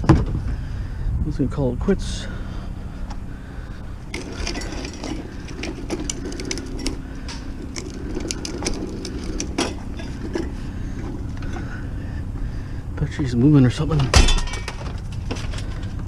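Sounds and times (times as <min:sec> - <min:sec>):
van engine running: 0:00.0 - 0:16.0
sharp clicks and rattles: 0:04.0 - 0:11.8.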